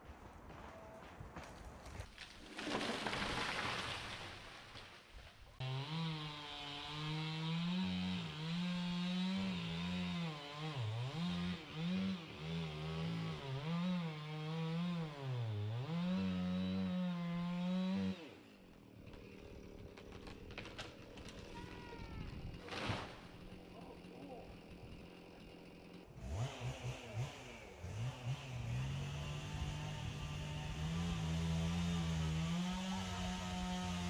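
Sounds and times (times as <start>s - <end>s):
chainsaw cutting into tree: 1.8s - 4.9s, 5.6s - 34.0s.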